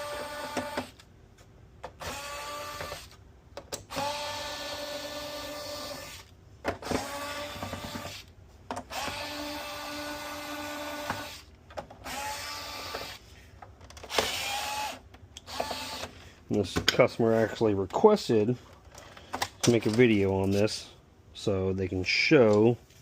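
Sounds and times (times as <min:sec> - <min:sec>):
electric screwdriver whirring: 0:00.0 - 0:01.0, 0:02.0 - 0:03.2, 0:03.8 - 0:08.3, 0:08.9 - 0:13.2, 0:14.0 - 0:16.1.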